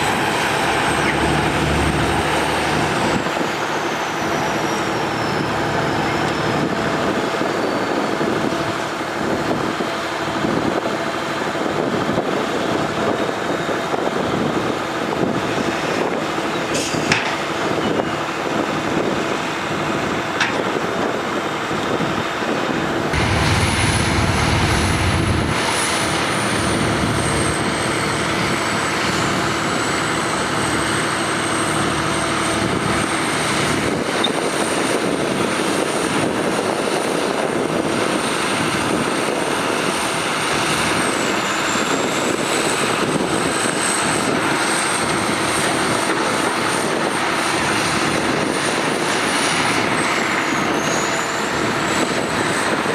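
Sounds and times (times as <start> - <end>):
heavy diesel machinery running: 0.0 - 52.9
high machine whine: 22.3 - 37.4.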